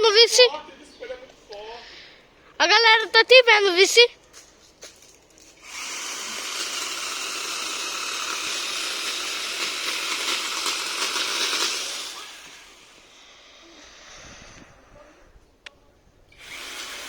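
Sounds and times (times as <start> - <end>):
chainsaw cutting wood: 5.6 - 13.5, 16.3 - 17.0.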